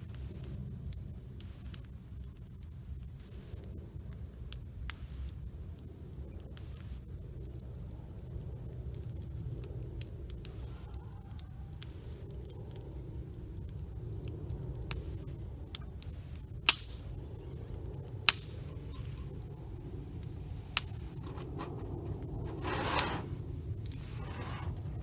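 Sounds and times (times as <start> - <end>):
low rush of burning fire: 0.1 - 25.0
campfire crackling and popping: 8.4 - 25.0.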